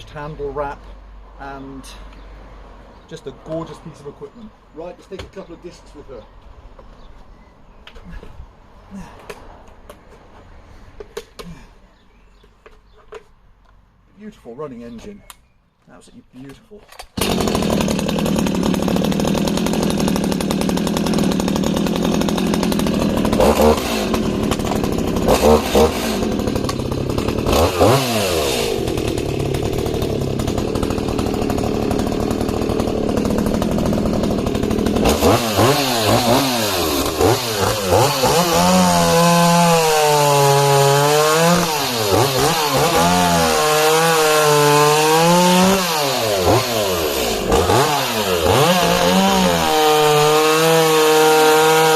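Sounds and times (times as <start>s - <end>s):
chainsaw cutting log: 17.0s - 51.9s.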